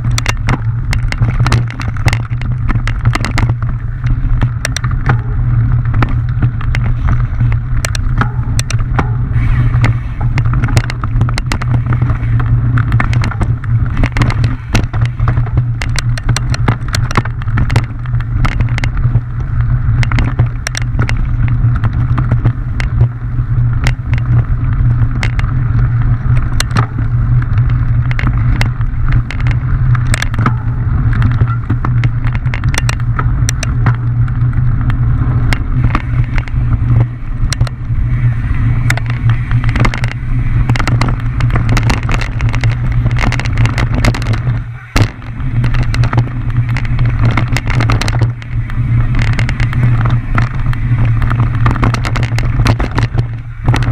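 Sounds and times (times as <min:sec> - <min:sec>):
bike rattling and knocking: 0:00.0 - 0:53.9
rumble of tyres and wind: 0:00.0 - 0:53.9.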